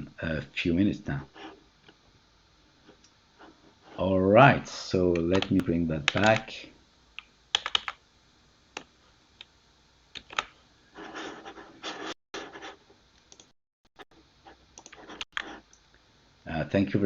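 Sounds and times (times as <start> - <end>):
computer keyboard and mouse clicks: 5.2 - 6.5, 7.2 - 8.0, 10.2 - 10.5, 13.3 - 13.5, 14.8 - 15.8.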